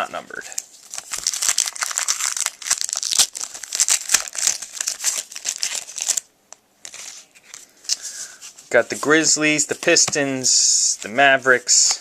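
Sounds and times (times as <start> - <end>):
trading cards rustling and scraping: 6.8 - 10.2.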